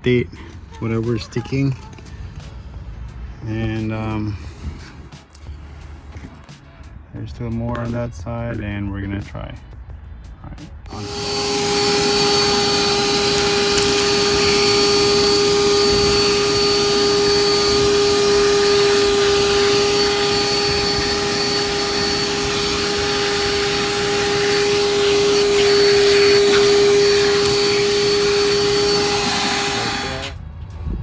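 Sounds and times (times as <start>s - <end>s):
shop vacuum motor whine: 10.9s - 30.4s
air rushing through hose: 10.9s - 31.0s.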